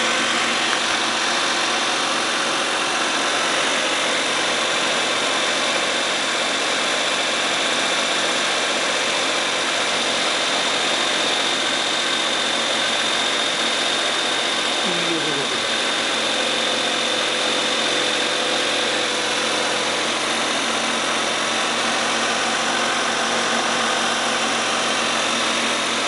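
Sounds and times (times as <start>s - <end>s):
van engine running: 0.0s - 6.0s, 14.7s - 26.0s.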